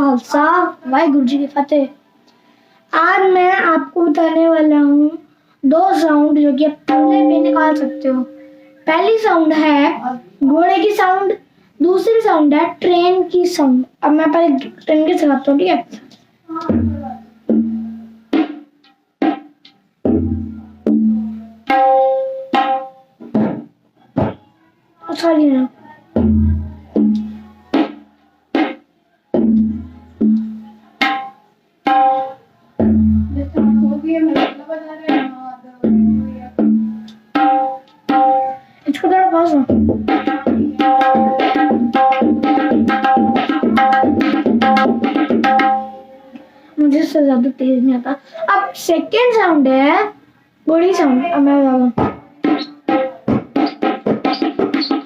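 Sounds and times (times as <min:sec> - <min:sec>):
tabla drum strokes: 0:16.5 - 0:24.4, 0:26.2 - 0:28.8, 0:29.4 - 0:38.6, 0:39.7 - 0:46.1, 0:52.0 - 0:55.0.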